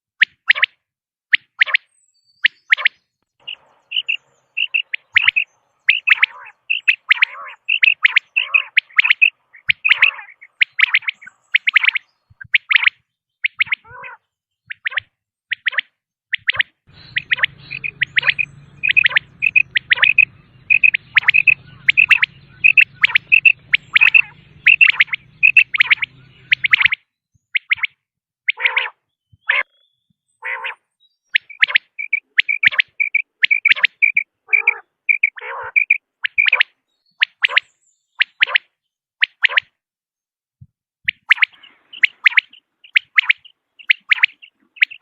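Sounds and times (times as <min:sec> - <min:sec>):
quail calling: 0:01.4 - 0:27.0, 0:27.6 - 0:29.8, 0:30.4 - 0:39.7, 0:41.1 - 0:45.0
low hum: 0:16.9 - 0:26.8.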